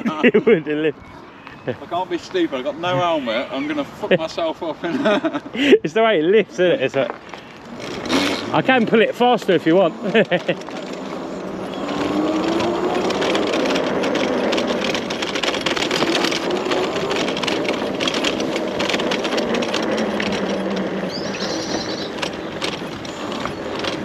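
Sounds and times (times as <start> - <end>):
bike tyres rattling on rough ground: 6.6 - 24.0.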